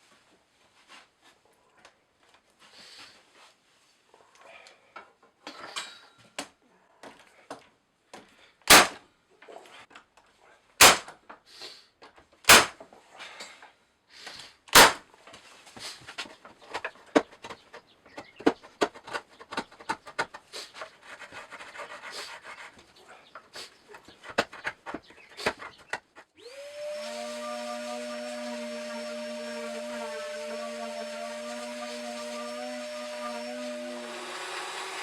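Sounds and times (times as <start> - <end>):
electric power tool running: 26.4 - 35.0.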